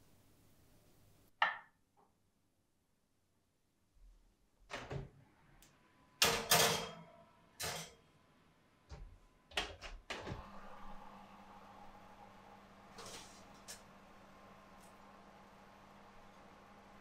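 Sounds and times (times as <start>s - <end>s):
kitchen knocks and clunks: 6.2s - 7.0s
steady low hum: 10.4s - 17.0s.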